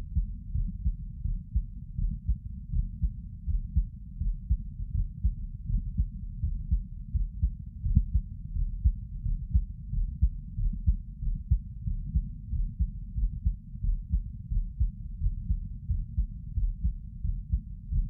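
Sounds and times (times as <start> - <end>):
heartbeat thumps: 0.0 - 18.0.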